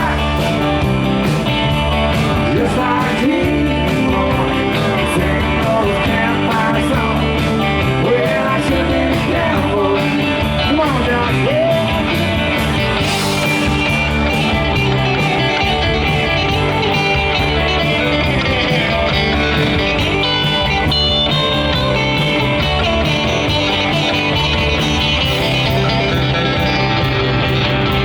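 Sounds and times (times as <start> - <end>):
country band playing: 0.0 - 28.0
lead guitar: 0.0 - 28.0.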